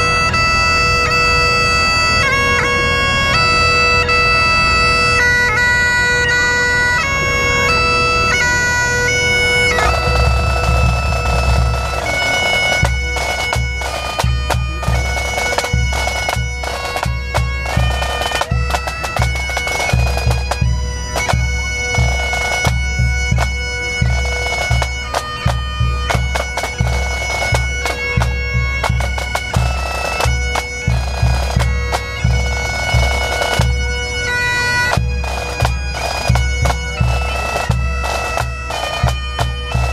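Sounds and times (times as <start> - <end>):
bagpipes playing melody: 0.0 - 39.9
drums driving rhythm: 9.7 - 23.6.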